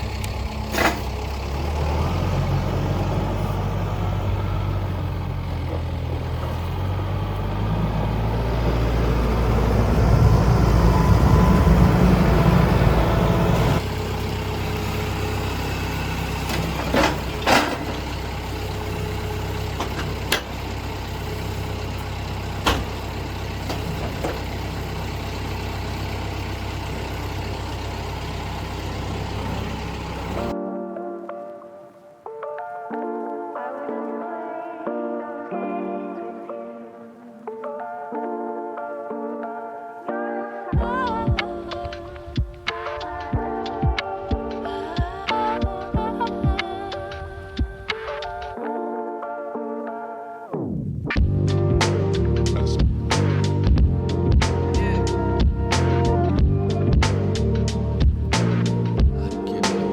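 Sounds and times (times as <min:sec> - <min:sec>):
heavy engine running: 0:00.0 - 0:30.6, 0:51.2 - 0:59.9.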